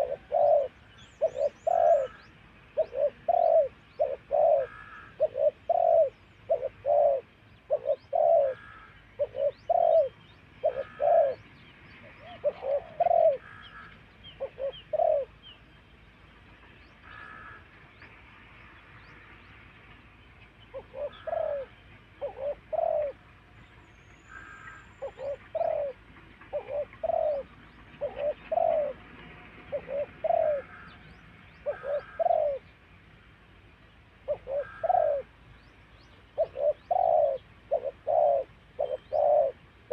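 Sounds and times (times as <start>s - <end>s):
dove cooing: 0.0s - 15.4s, 20.7s - 23.2s, 24.3s - 31.0s, 31.6s - 32.7s, 34.2s - 35.4s, 36.3s - 39.9s.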